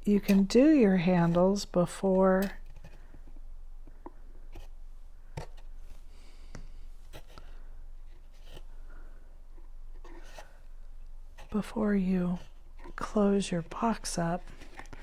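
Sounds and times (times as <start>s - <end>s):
cardstock being handled: 12.4s - 15.0s.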